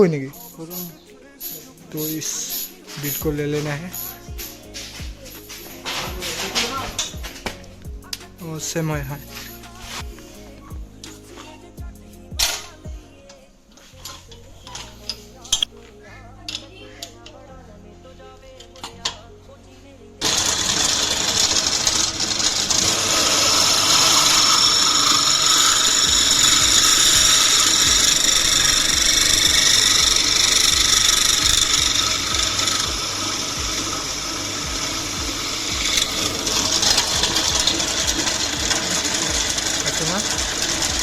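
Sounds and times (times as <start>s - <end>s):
electric drill grinding through metal: 5.3s - 7.4s, 20.2s - 41.0s.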